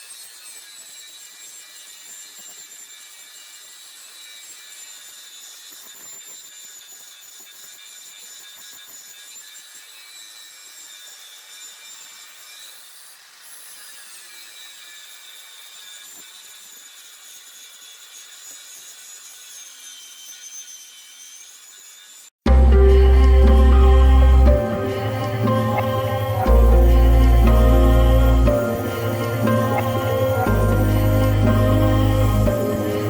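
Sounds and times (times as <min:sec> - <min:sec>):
plasma cutter hissing and whistling: 0:00.0 - 0:33.0.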